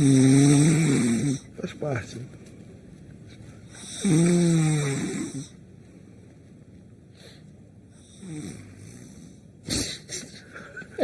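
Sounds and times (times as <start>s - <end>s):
man snoring loudly: 0.0s - 1.5s, 3.8s - 5.6s, 8.0s - 9.3s.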